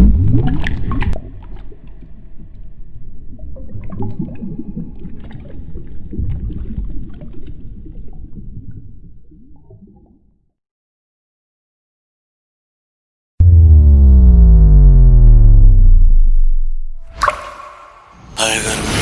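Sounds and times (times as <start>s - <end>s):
deep water splash: 0.0s - 2.3s, 17.0s - 18.2s
water gurgling and bubbling: 0.0s - 10.0s, 17.0s - 18.3s.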